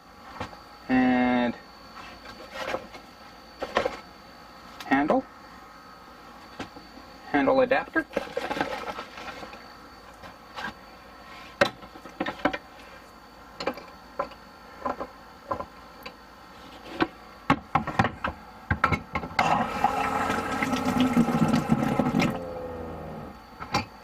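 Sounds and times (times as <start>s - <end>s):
water rushing into a pail: 8.1s - 9.6s, 19.4s - 22.4s.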